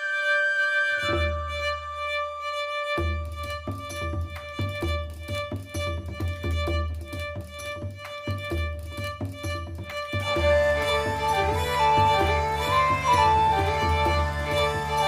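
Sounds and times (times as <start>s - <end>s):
fiddle melody: 0.0s - 15.0s
drum beating: 3.0s - 15.0s
steady drone: 10.2s - 15.0s.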